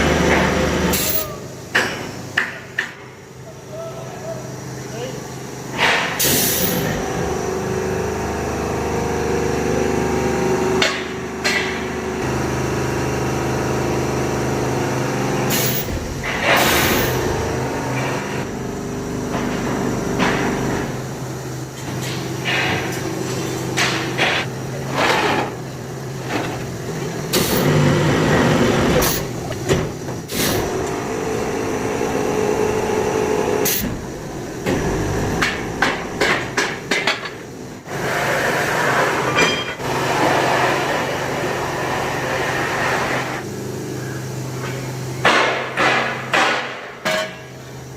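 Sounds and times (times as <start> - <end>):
truck engine running: 23.1 - 37.9.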